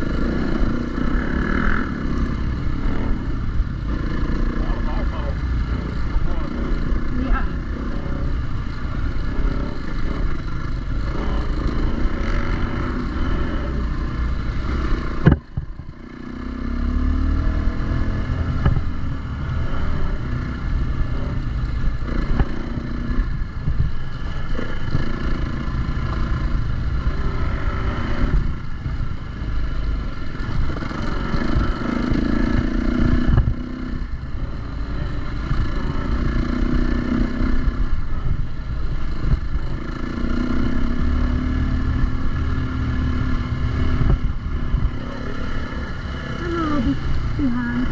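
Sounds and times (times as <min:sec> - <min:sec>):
dirt bike engine revving: 0:00.0 - 0:47.9
sharp knock: 0:15.2 - 0:15.7.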